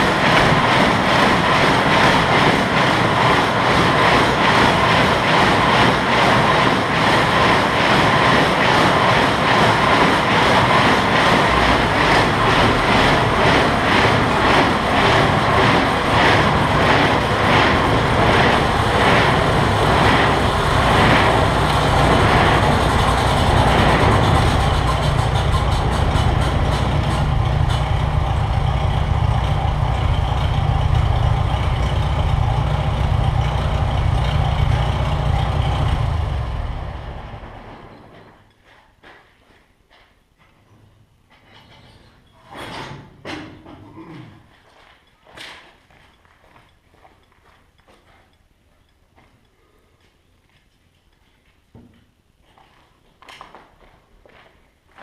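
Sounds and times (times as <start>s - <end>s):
baler mechanical clatter: 0.0s - 38.4s
tractor engine hum: 0.0s - 38.4s.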